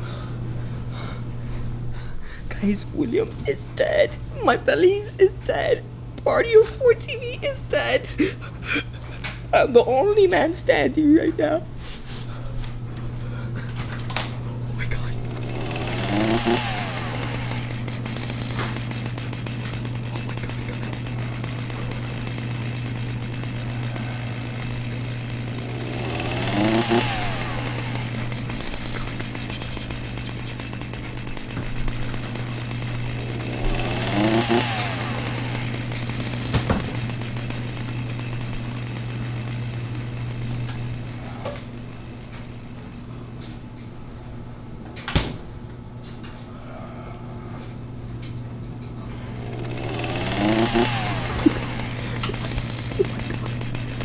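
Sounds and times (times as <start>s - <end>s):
chainsaw engine revving: 14.9s - 43.6s, 49.1s - 54.0s.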